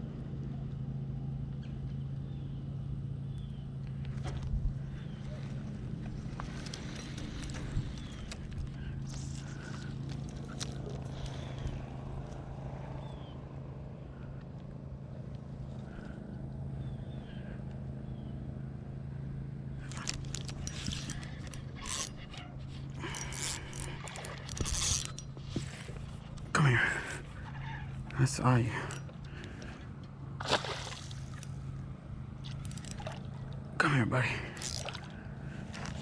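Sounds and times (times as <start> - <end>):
small motor humming: 19.9 - 26.4
clicks and scraping: 19.9 - 26.5.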